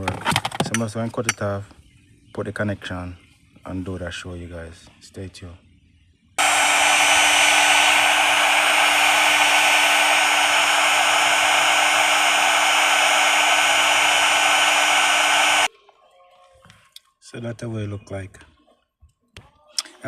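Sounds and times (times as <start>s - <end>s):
heat gun blowing: 6.4s - 15.7s.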